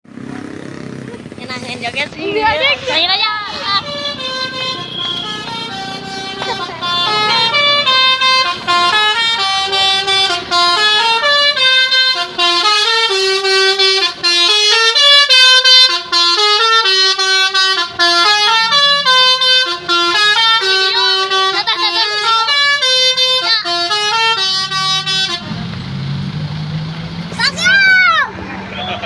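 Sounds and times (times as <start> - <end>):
bus horn playing melody: 2.6 - 25.6.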